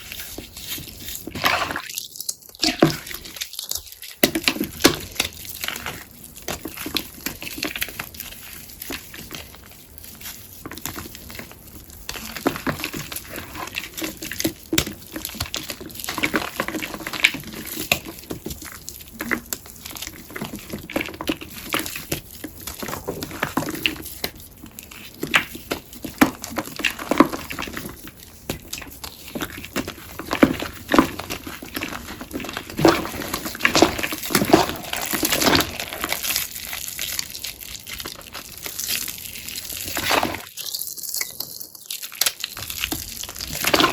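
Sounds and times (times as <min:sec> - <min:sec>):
chalk sponge crunching: 0:23.8 - 0:43.9.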